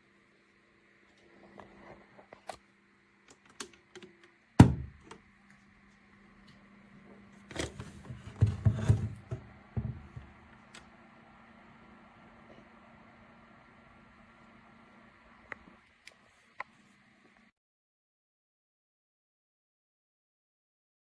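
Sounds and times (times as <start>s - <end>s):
steady low hum: 4.2s - 17.5s
loud thump: 4.6s - 5.0s
objects knocking and clicking: 7.5s - 10.3s.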